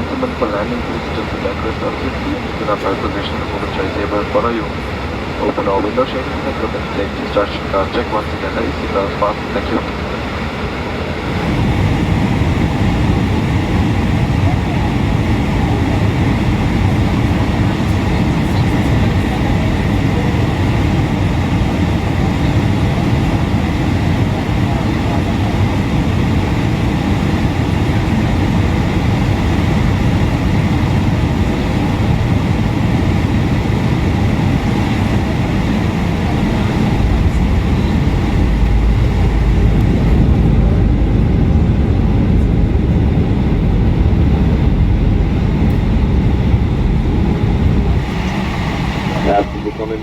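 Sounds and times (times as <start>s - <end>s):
jet engines and airflow rushing: 0.0s - 50.0s
deep rumble: 11.3s - 50.0s.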